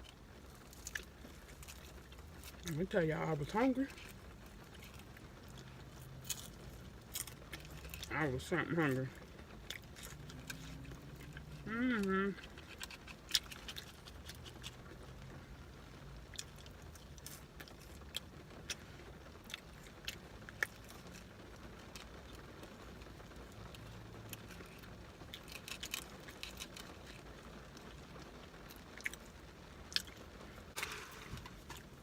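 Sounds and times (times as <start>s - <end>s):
person chewing: 0.0s - 2.8s, 3.5s - 15.4s, 16.2s - 28.0s, 28.6s - 32.0s.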